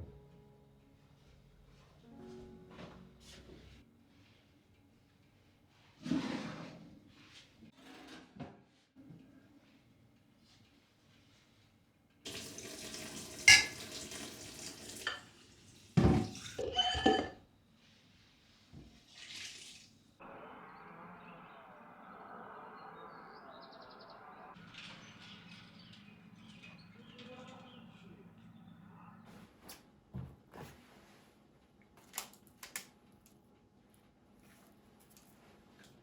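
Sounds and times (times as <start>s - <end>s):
water running: 12.3s - 17.3s, 18.9s - 20.1s.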